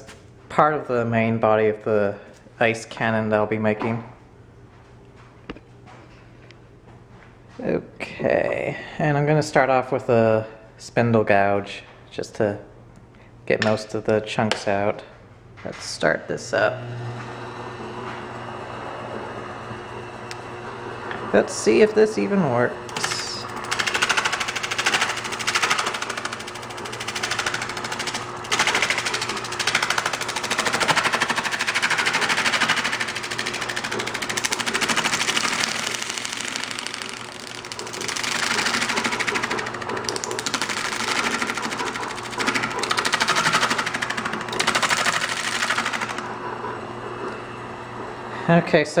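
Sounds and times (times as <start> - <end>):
lathe gouge chattering on foam: 22.9 - 46.3.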